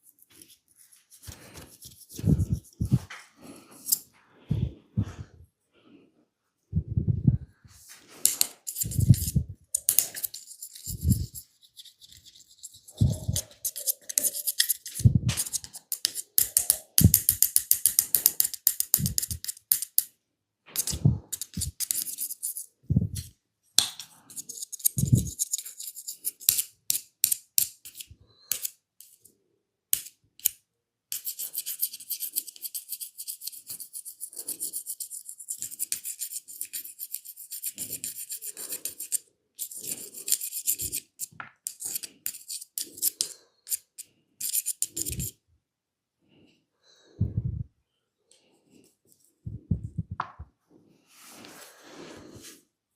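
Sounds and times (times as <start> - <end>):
hands rubbing and scratching hair: 0.0 - 5.3, 7.0 - 19.9, 51.1 - 52.6.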